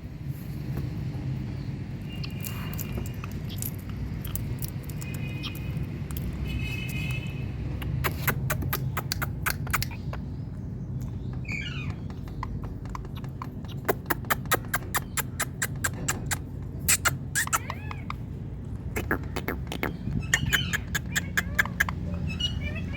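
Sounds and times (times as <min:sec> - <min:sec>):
parrot calling and squawking: 0:07.8 - 0:10.4, 0:11.4 - 0:22.9.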